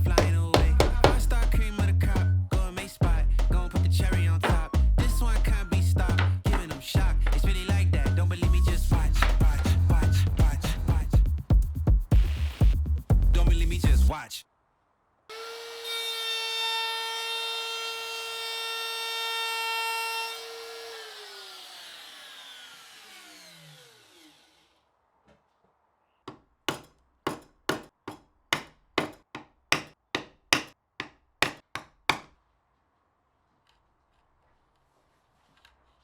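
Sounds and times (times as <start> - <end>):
hand saw cutting wood: 15.4 - 24.7
power tool motor whining: 20.3 - 24.7.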